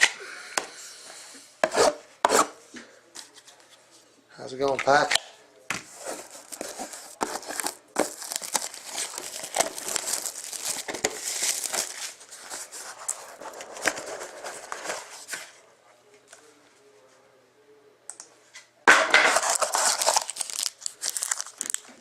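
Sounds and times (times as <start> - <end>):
plastic wrap crackling: 6.5 - 13.2, 19.3 - 22.0.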